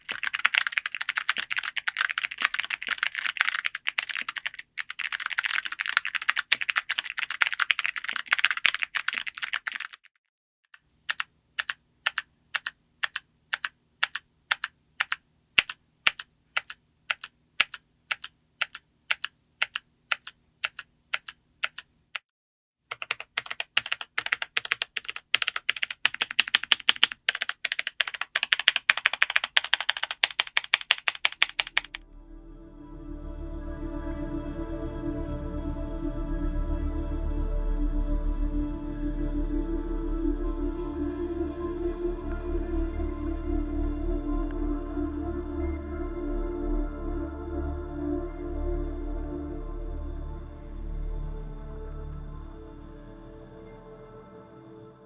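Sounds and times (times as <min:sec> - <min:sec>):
typing on mechanical keyboard: 0:00.0 - 0:10.2, 0:10.8 - 0:22.2, 0:22.9 - 0:32.0.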